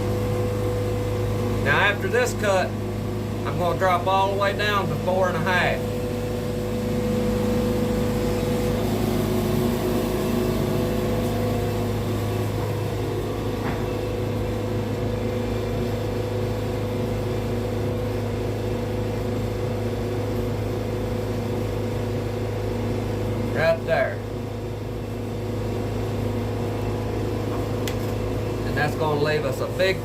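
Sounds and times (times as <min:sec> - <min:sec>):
sawmill engine cutting log: 0:00.0 - 0:15.4.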